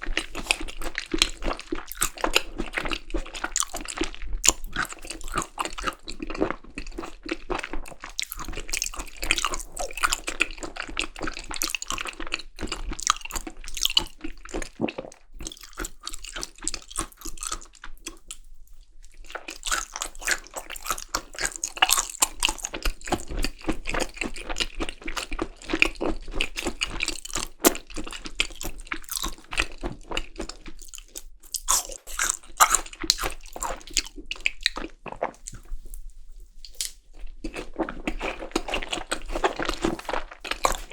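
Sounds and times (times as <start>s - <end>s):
wet chewing and crunching: 0.0s - 40.9s.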